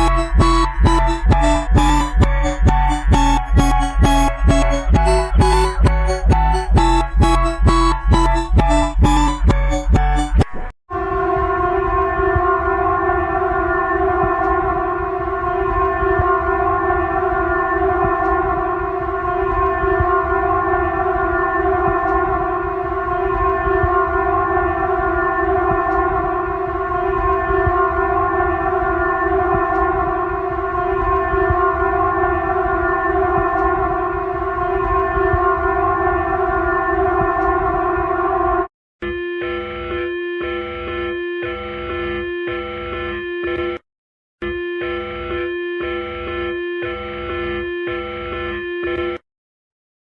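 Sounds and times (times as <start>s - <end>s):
steady alert siren tone: 0.0s - 43.8s, 44.4s - 49.2s.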